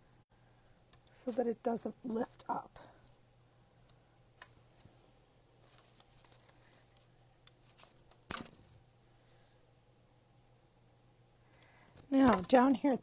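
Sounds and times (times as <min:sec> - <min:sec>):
cardstock rustling and clicking: 0:05.7 - 0:08.8, 0:12.0 - 0:12.8.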